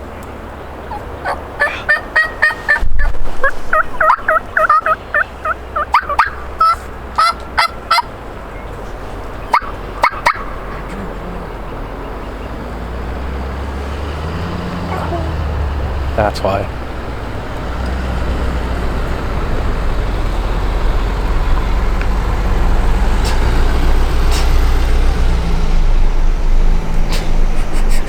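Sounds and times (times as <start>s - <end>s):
turkey alarm putts: 0.2s - 20.8s
turkey calling: 0.7s - 21.6s.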